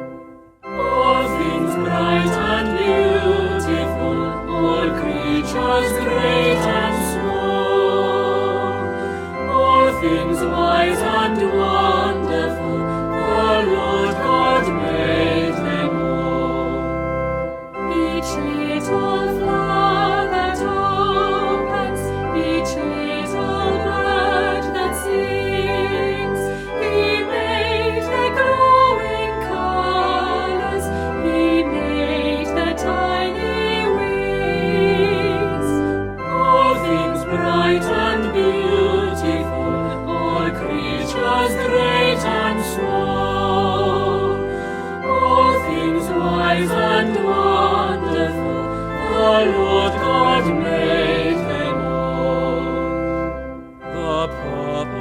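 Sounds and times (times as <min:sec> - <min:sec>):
choir singing church music: 0:00.0 - 0:55.0.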